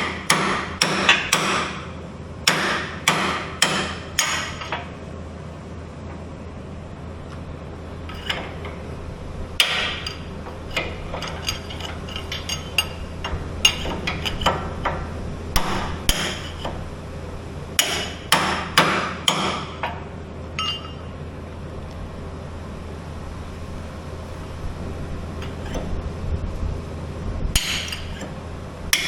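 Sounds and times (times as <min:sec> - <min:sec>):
hammer striking steel: 0:00.0 - 0:04.9, 0:08.1 - 0:08.7, 0:09.6 - 0:16.8, 0:17.8 - 0:21.1, 0:27.6 - 0:29.0.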